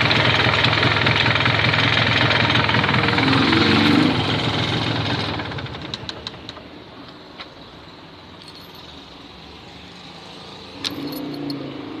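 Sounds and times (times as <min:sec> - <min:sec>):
two-stroke engine idling: 0:00.0 - 0:06.6.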